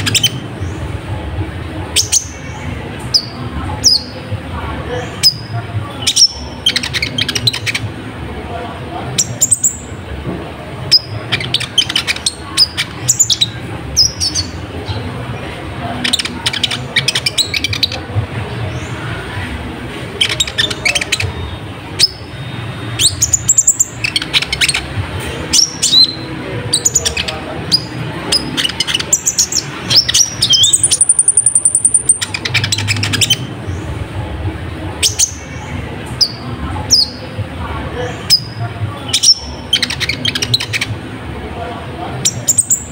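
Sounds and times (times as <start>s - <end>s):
sunbird singing: 0.0s - 1.0s, 1.9s - 8.0s, 9.0s - 10.0s, 10.9s - 15.1s, 15.9s - 19.2s, 20.1s - 34.0s, 38.0s - 41.0s, 42.1s - 42.9s
sunbird chirps and trill: 20.2s - 24.9s, 25.5s - 33.9s.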